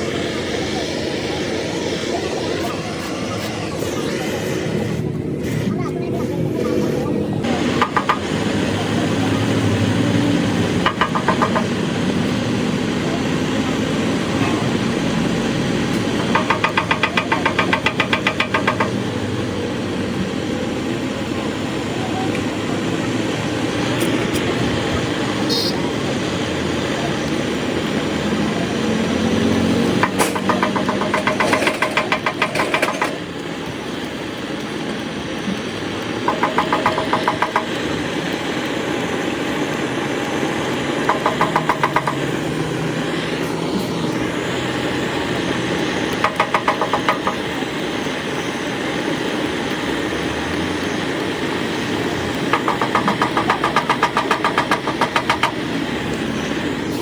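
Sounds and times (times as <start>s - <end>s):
steady machine noise: 0.0s - 57.0s
rapid mechanical rattling: 7.4s - 19.3s, 29.3s - 48.3s, 51.9s - 56.9s.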